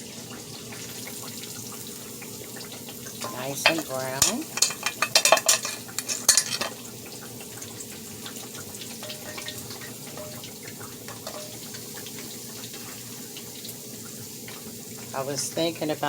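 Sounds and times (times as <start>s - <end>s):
meat sizzling in a frying pan: 0.0s - 16.0s
utensil clattering against pan: 3.1s - 12.8s.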